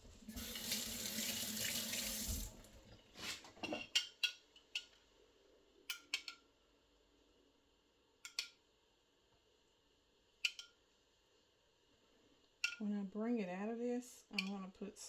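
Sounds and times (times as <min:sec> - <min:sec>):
kitchen tap running: 0:00.0 - 0:03.0.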